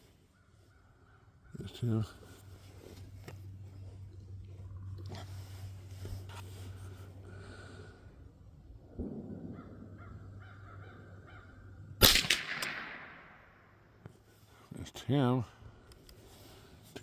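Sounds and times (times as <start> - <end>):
rifle shot: 12.0 - 13.8.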